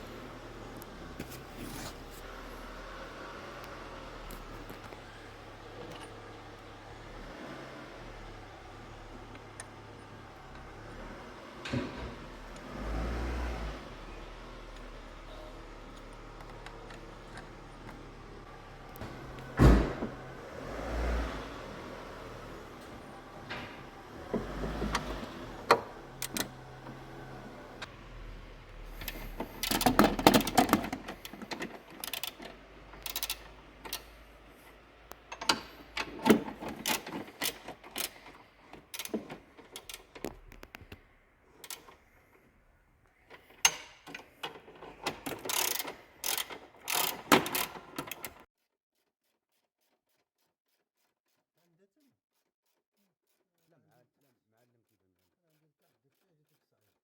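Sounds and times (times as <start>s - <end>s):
car engine humming: 0.0s - 48.4s
metal parts clicking and knocking: 22.8s - 27.9s, 28.9s - 41.0s, 41.6s - 42.0s, 43.3s - 48.4s.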